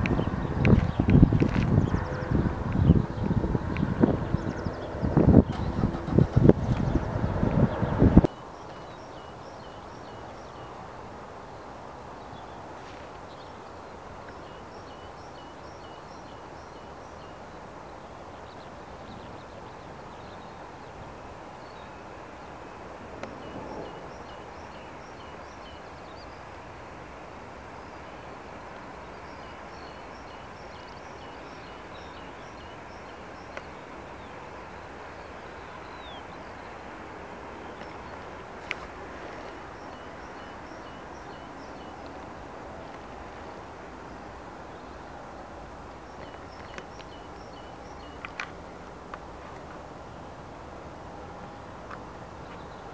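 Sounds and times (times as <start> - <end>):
small birds chirping: 0.0 - 50.4, 51.9 - 52.9
outdoor background noise: 0.0 - 52.9
faint clicks: 33.5 - 33.7, 48.0 - 49.8.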